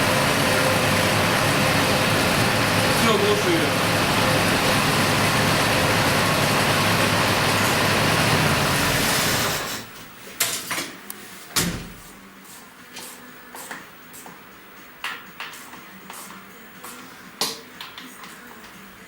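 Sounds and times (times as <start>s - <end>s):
car engine running: 0.0s - 9.7s.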